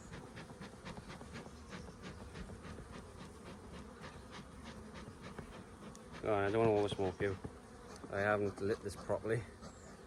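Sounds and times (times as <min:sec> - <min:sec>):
bees buzzing: 0:00.0 - 0:10.0.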